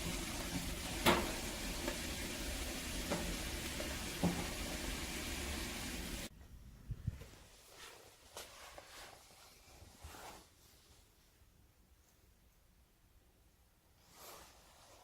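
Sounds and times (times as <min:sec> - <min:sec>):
fire crackling: 0:00.0 - 0:06.3
wood fire hissing: 0:00.0 - 0:06.3.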